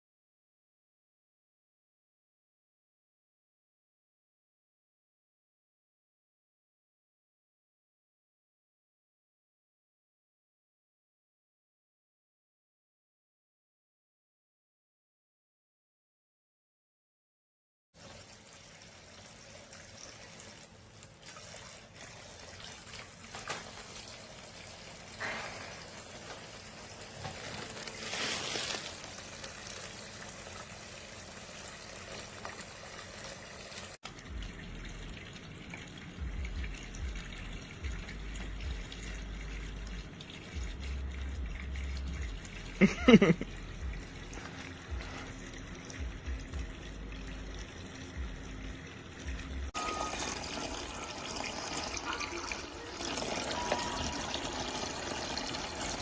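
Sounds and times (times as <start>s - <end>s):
water trickling into toy sink: 18.0s - 56.0s
small handling splashes: 27.2s - 29.1s.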